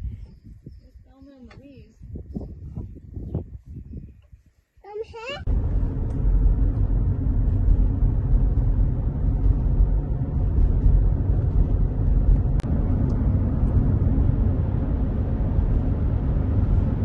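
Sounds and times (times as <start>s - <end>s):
loud low rumble: 5.4s - 17.0s.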